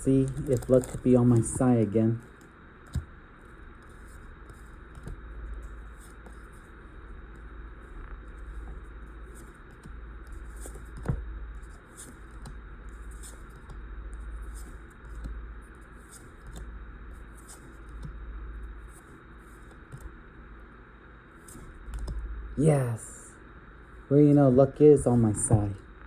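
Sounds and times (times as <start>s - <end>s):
steady low hum: 0.0s - 26.0s
cards sliding swishes: 15.9s - 16.6s.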